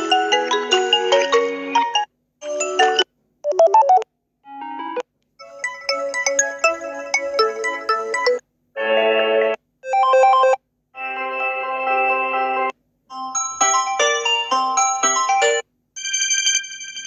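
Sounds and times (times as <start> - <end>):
phone ringtone melodies: 4.8 - 8.4, 13.1 - 17.0.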